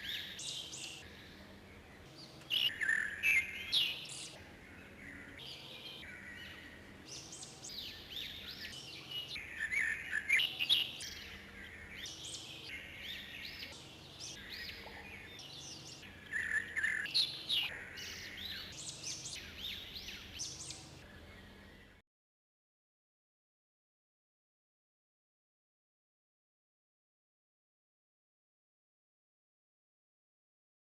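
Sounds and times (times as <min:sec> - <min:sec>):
small birds chirping: 0:00.0 - 0:22.0.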